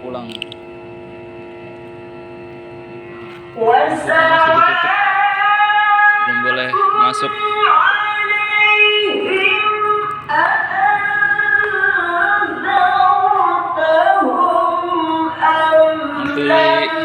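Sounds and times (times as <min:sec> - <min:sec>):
person chanting recitation: 0:03.6 - 0:17.0.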